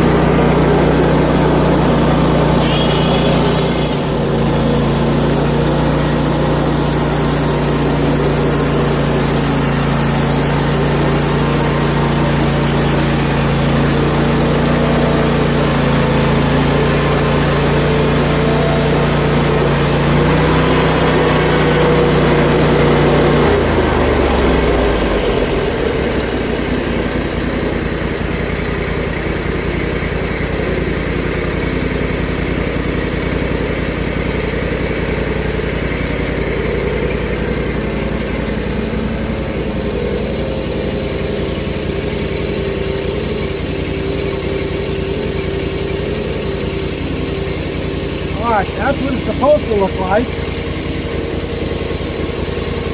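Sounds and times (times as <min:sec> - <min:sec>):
saw blade cutting log: 0:00.0 - 0:23.6, 0:35.7 - 0:51.0
sawmill gas engine running: 0:00.0 - 0:52.9.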